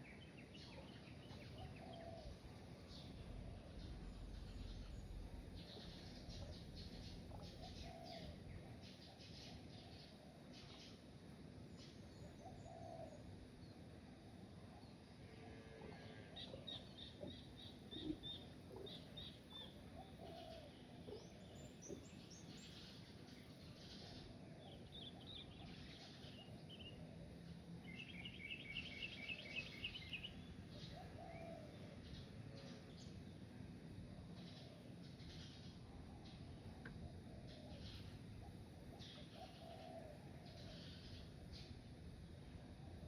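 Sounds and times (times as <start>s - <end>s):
faint outdoor background noise: 0.0s - 43.0s
soft low bird calls: 34.0s - 42.0s.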